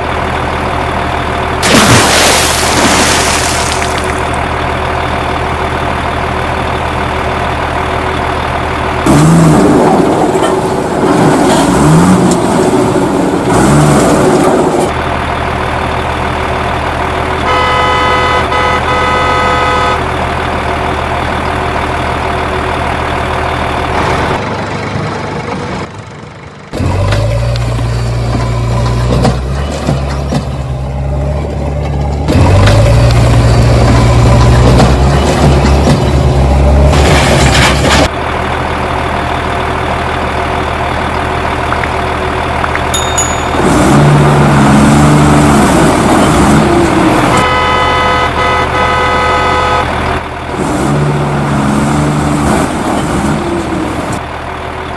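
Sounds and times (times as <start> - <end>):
vehicle engine revving: 9.0 - 14.9, 30.6 - 38.1, 43.6 - 54.2
vehicle horn: 17.4 - 20.1, 47.3 - 50.0.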